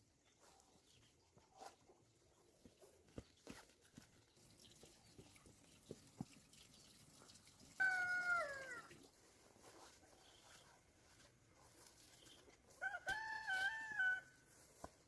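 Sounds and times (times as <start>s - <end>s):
chicken call: 7.8s - 8.9s.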